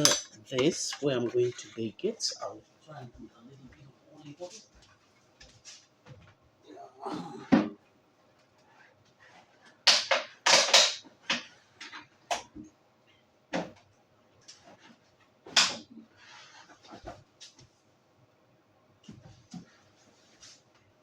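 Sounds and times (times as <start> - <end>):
kitchen items knocking and clattering: 0.0 - 1.8, 9.8 - 12.6.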